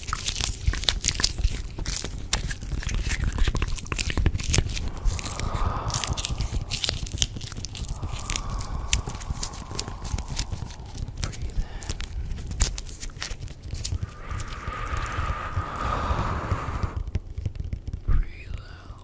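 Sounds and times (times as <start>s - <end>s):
hissing whoosh: 4.4s - 17.4s
low rumble: 4.4s - 17.4s.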